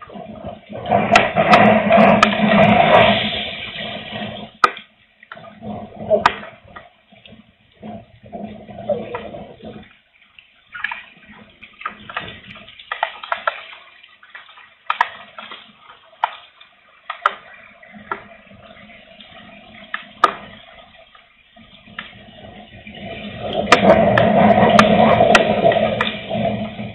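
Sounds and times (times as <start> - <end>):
wind rumbling on microphone: 0.0 - 4.6, 5.4 - 10.0, 17.6 - 26.9
raindrops dripping and tapping: 0.0 - 26.9.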